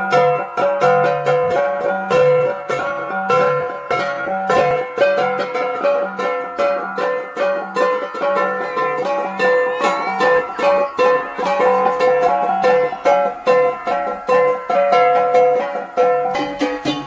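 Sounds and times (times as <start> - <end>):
plucked string music: 0.0 - 17.0.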